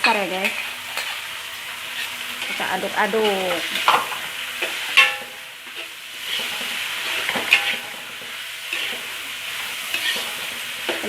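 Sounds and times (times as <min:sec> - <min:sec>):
spatula clanging on a pan: 0:00.0 - 0:01.2, 0:01.9 - 0:11.0
chilies and tomatoes sizzling in oil: 0:00.0 - 0:11.0
spatula stirring in a pan: 0:00.0 - 0:11.0.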